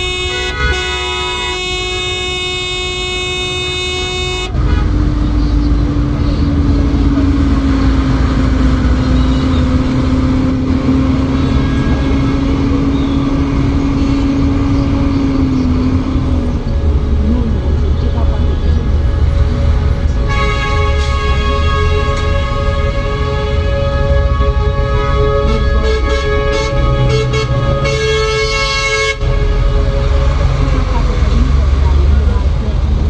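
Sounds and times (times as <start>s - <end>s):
vehicle horn held: 0.0s - 4.6s
traffic engine rumble: 0.0s - 33.0s.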